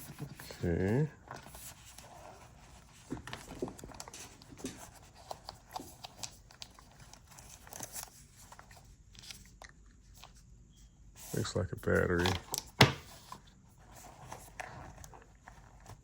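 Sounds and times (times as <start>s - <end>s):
packaging rustling and crinkling: 0.0s - 10.4s.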